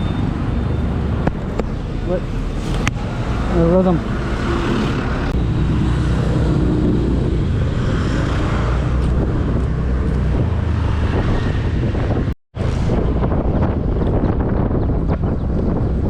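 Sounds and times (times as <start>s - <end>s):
road and wind noise: 0.0s - 16.0s.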